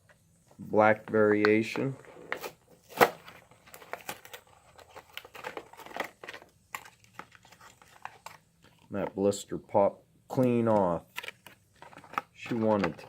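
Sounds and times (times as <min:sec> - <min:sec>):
crinkling plastic and cardboard: 0:00.0 - 0:09.2, 0:10.4 - 0:13.0.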